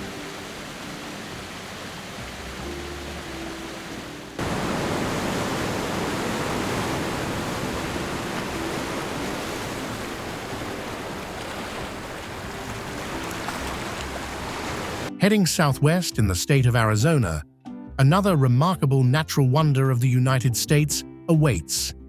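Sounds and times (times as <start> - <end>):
rushing water: 0.0 - 15.1.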